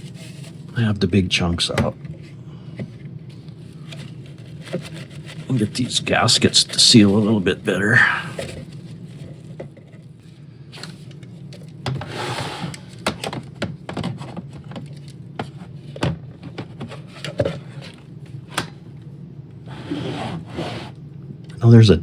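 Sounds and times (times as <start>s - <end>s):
steady low hum: 0.0s - 22.0s
rubbing scrapes: 19.7s - 21.0s.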